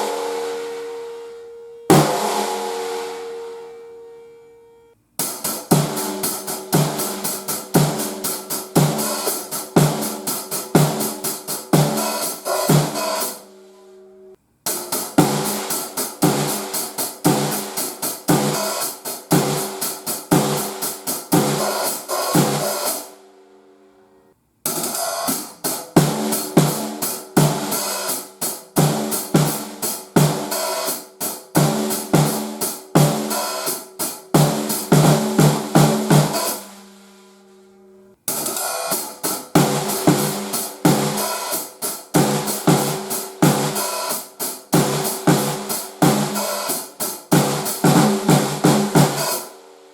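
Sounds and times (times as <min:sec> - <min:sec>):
drum kit playing a groove: 0:00.0 - 0:04.2, 0:05.2 - 0:13.5, 0:14.7 - 0:23.1, 0:24.7 - 0:36.9, 0:38.3 - 0:49.6.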